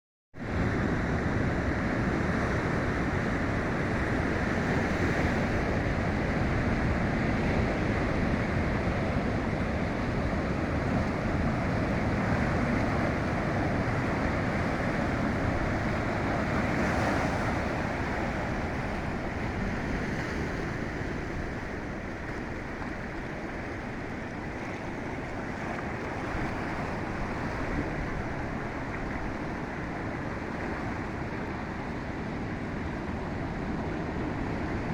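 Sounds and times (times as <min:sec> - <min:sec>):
ocean surf breaking on beach: 0:00.4 - 0:34.9.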